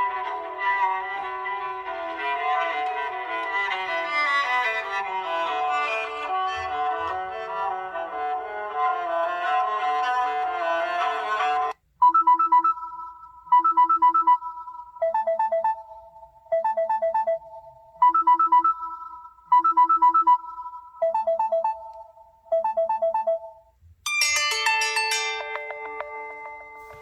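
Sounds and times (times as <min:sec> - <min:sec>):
beeping electronic alarm melody: 0:12.0 - 0:23.6
bell-like chime: 0:24.1 - 0:27.0.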